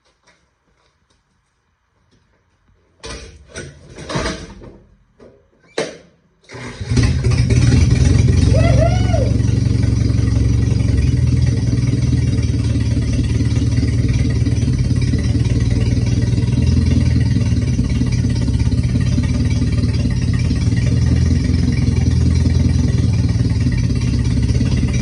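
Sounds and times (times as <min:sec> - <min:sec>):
forklift engine idling: 0:06.9 - 0:25.0.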